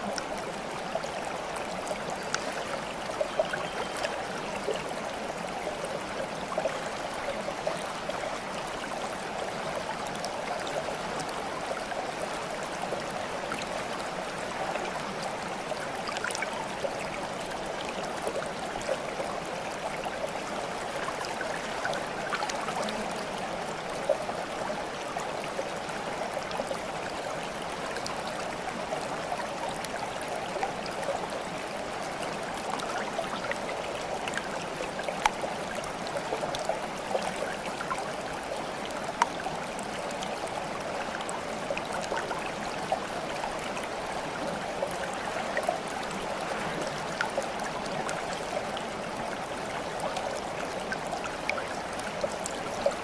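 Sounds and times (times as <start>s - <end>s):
stream babbling: 0.0s - 53.0s
small splashes and drips: 1.5s - 4.9s.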